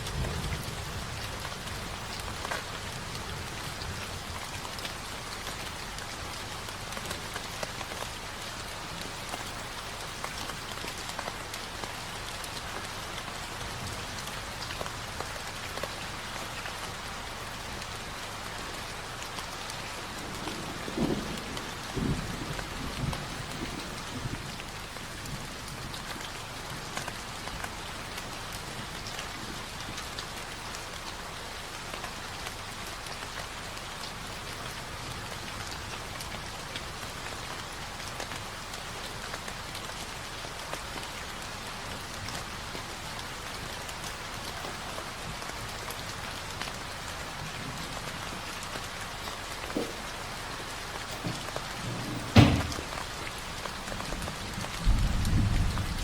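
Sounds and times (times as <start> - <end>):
rain patter: 0.0 - 56.0
sharp thump: 51.2 - 52.9.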